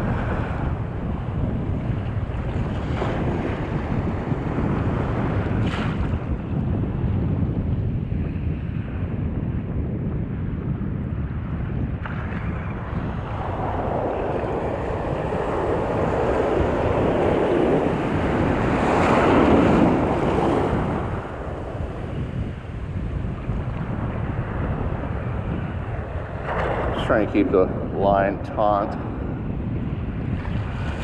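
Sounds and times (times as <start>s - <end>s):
wind rumble on microphone: 0.0s - 31.0s
ocean wave washing in: 12.7s - 22.9s.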